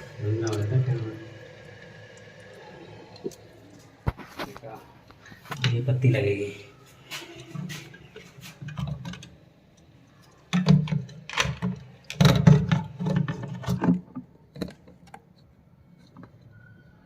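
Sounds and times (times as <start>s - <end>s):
plastic parts clicking and rattling: 10.2s - 15.4s.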